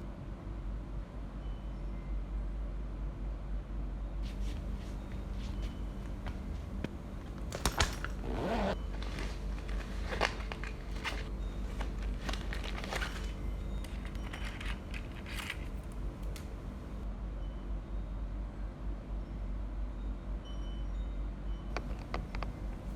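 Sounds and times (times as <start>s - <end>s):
steady low hum: 4.2s - 17.1s
crinkling rustles: 4.3s - 17.0s, 21.8s - 22.9s.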